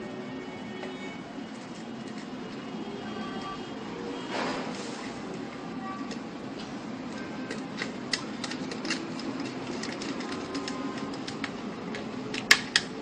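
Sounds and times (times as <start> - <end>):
clicks and taps of wires and switch: 7.5 - 12.9.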